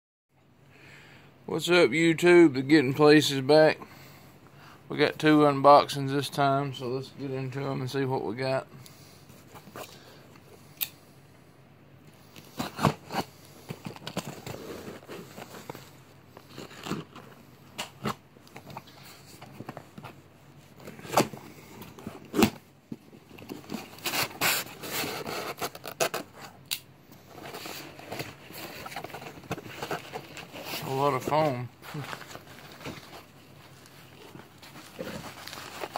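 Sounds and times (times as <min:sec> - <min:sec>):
cardboard and foam rustling: 0:12.3 - 0:26.6, 0:27.2 - 0:35.9.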